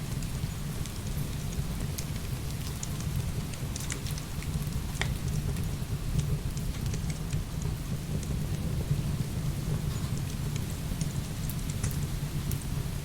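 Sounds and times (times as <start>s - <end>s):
firewood crackling and popping: 0.1s - 8.6s.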